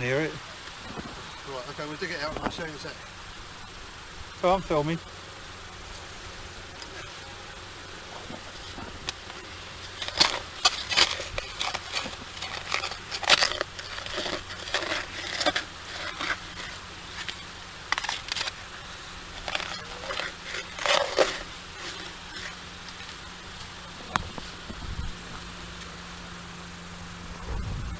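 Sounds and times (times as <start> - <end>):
digging crunching and scraping: 5.6 - 26.7.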